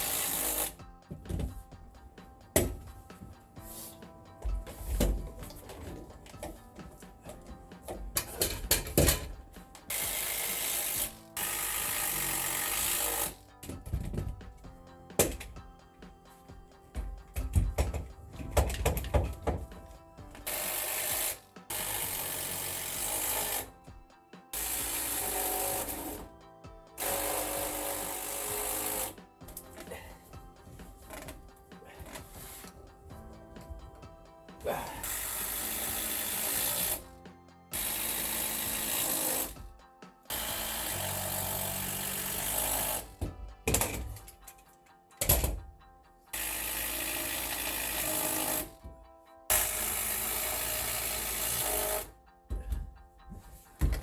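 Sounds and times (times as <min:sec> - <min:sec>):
power drill driving screws: 0:00.0 - 0:00.8, 0:08.2 - 0:13.4, 0:17.9 - 0:23.8, 0:24.6 - 0:26.3, 0:27.0 - 0:29.2, 0:34.9 - 0:37.1, 0:37.7 - 0:39.6, 0:40.3 - 0:44.0, 0:46.4 - 0:48.8, 0:49.5 - 0:52.1
background music: 0:00.0 - 0:54.0
knocks: 0:17.0 - 0:19.9.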